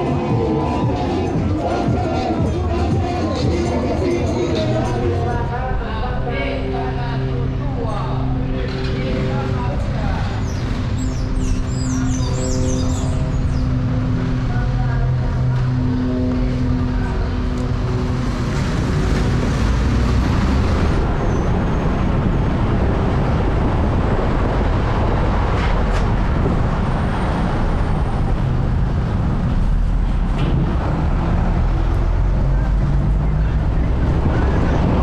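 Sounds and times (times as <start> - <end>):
vehicle traffic noise: 0.0 - 35.0.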